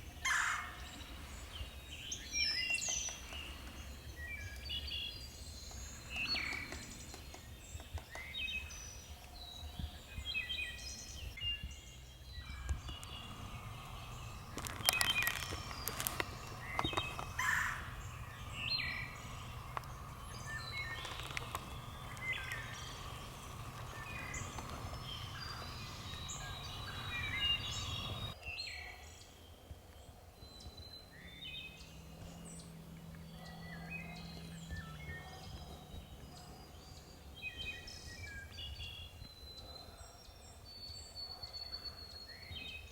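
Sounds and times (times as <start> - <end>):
songbirds chirping: 0.0 - 42.9
sharp clicks or rustles: 12.7 - 17.9, 20.8 - 25.4.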